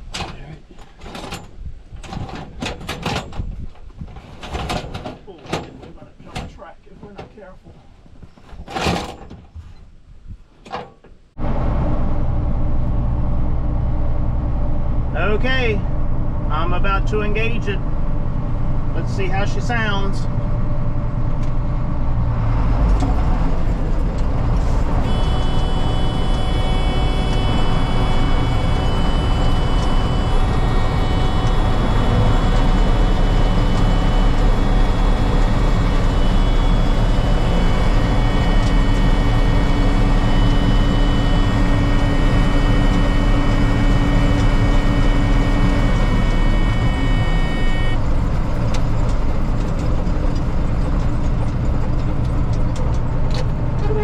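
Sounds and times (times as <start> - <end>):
combine machinery running: 11.4 - 54.0
high buzzing tone: 24.3 - 48.1.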